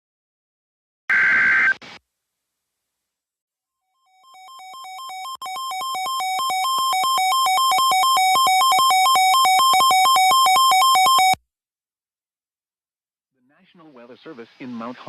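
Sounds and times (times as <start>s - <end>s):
electronic two-tone warble alarm: 4.0s - 11.4s.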